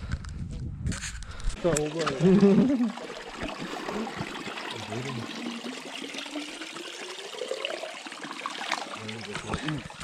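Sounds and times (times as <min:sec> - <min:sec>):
running water rushing: 0:01.6 - 0:10.0.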